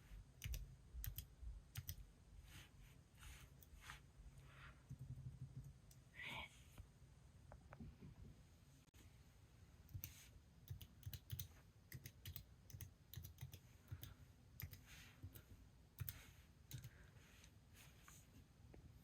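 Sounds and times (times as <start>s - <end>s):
faint keyboard typing: 0.3s - 2.0s, 4.8s - 6.1s, 9.8s - 17.2s.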